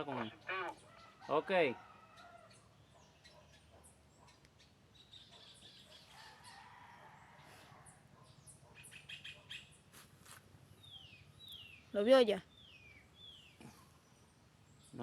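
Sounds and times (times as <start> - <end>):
faint birds chirping: 0.0 - 15.0.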